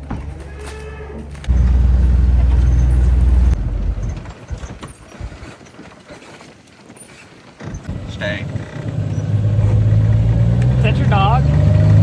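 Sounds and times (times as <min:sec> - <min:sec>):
knocks and clatter: 0:00.0 - 0:06.5
vehicle engine rumbling: 0:01.2 - 0:05.5, 0:07.7 - 0:12.0.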